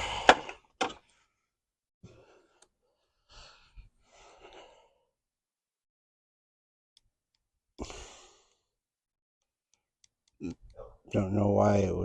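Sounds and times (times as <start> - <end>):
man exhaling and sighing: 0.0 - 0.7, 7.8 - 8.6.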